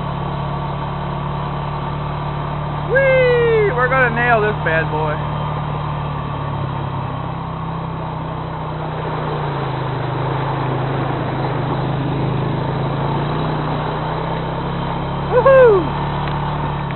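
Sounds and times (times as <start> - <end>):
engine running steadily: 0.0 - 16.9
short loud falling cry: 15.3 - 16.0.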